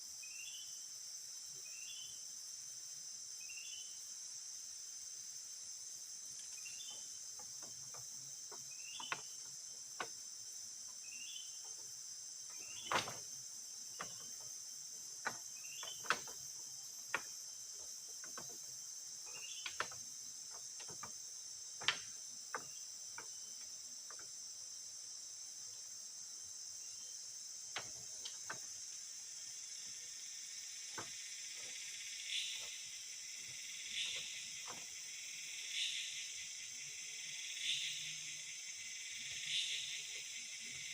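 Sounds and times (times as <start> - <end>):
buzzing insect call: 0.0 - 40.9
insect chorus drone: 0.0 - 40.9
sharp clicks and knocks: 12.8 - 13.3, 15.2 - 21.2, 21.8 - 24.3.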